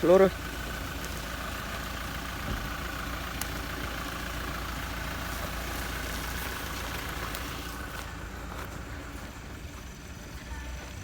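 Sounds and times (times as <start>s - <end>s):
suv engine running: 0.0s - 11.0s.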